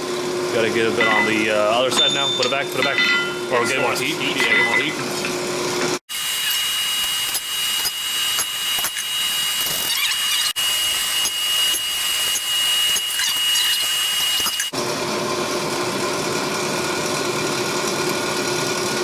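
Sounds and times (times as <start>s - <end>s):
thin steady whine: 0.5s - 5.3s.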